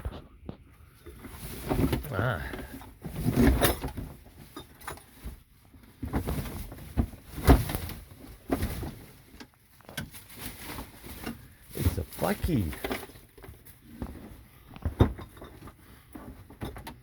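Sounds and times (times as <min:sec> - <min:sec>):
knocks and clatters of clutter: 0:00.0 - 0:11.5, 0:12.7 - 0:17.0
rustling: 0:01.1 - 0:14.4.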